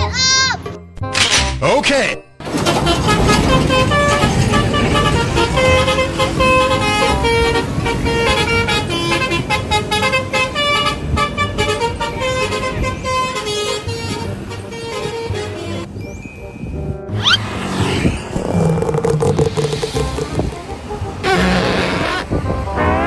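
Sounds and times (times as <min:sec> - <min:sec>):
bus melody horn tune: 0:02.4 - 0:15.9, 0:20.4 - 0:23.0.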